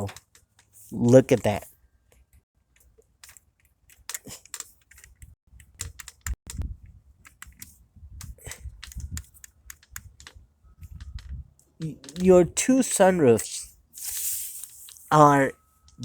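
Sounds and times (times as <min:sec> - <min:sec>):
light clicks and taps: 0:02.1 - 0:12.5.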